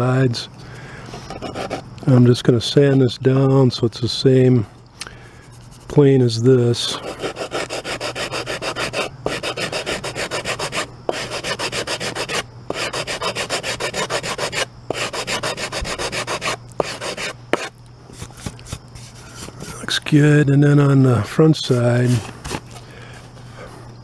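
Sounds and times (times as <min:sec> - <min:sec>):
sandpaper rubbing on wood: 0:07.0 - 0:19.8.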